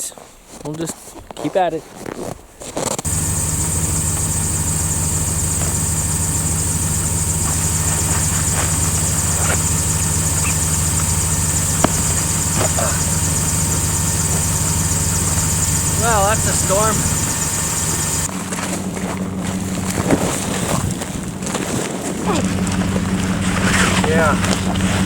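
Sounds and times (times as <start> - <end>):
faint ticks: 3.1 - 18.3
engine idling: 3.1 - 19.8.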